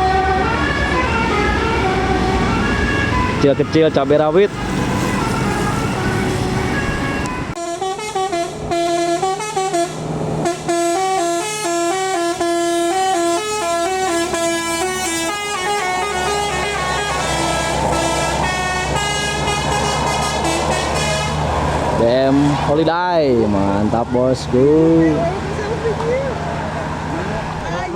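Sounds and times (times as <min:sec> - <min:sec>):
multi-tone musical air horn: 0:00.0 - 0:03.9, 0:04.7 - 0:21.5
bus engine running: 0:00.0 - 0:27.9.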